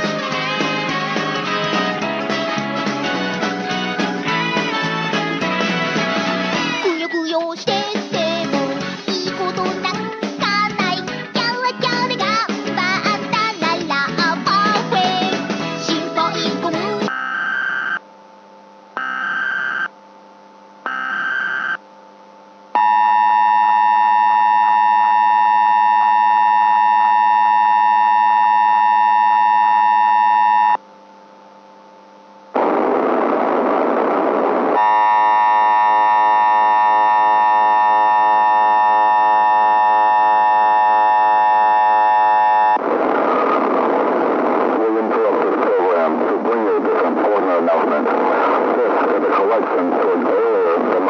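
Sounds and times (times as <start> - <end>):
static-like noise: 12.2 - 51.0
electronic attention tone: 17.1 - 18.1, 19.0 - 20.0, 20.8 - 21.8, 22.7 - 30.8, 34.8 - 42.8
data bursts: 19.0 - 19.9, 20.8 - 21.8.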